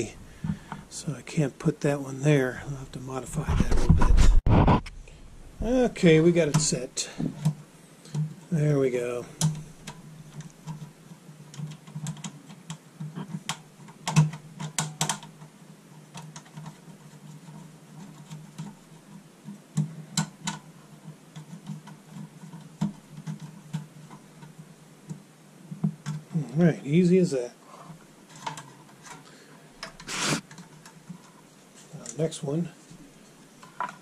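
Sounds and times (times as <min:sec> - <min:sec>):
steady low hum: 0:00.0 - 0:11.0
plastic fan clicks and knocks: 0:09.4 - 0:18.8, 0:19.5 - 0:26.3.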